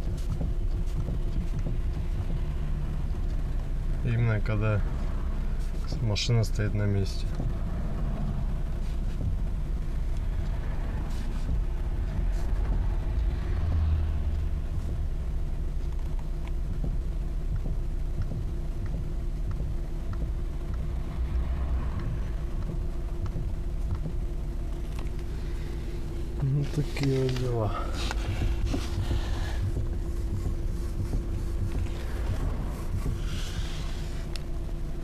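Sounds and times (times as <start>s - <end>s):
car engine idling: 0.0s - 35.0s
faint steering knocks: 0.0s - 35.0s.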